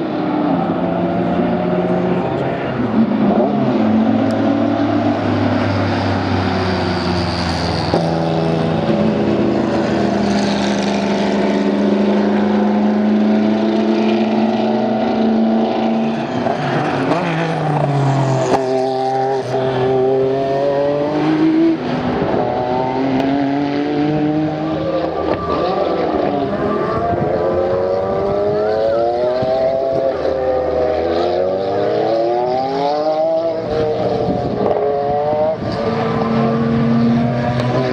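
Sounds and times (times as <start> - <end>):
race car engine running hard: 0.0 - 37.9.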